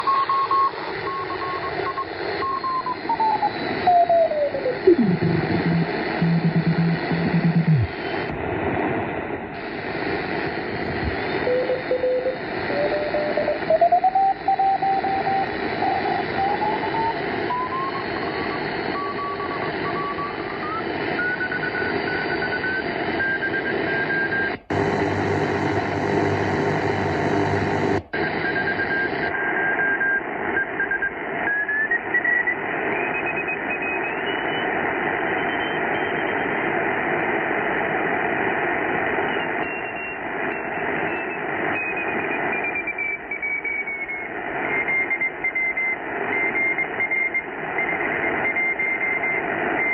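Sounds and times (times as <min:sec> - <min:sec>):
radio static hiss: 0:00.0 - 0:49.9
morse code beat tone: 0:04.8 - 0:07.9.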